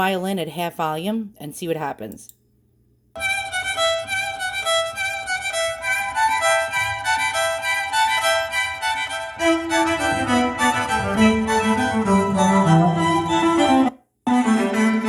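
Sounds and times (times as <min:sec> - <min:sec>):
dramatic violin music from speaker: 0:03.2 - 0:15.0.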